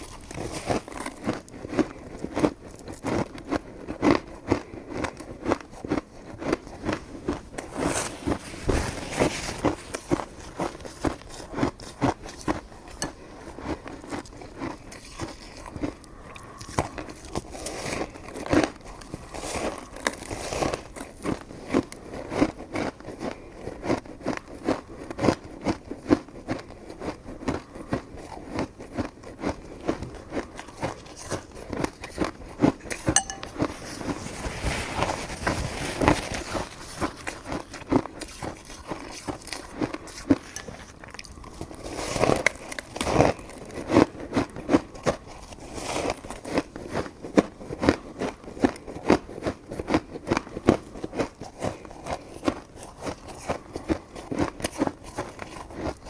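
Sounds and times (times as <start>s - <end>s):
chewing and wet mouth smacks: 9.6s - 34.1s, 36.8s - 56.0s.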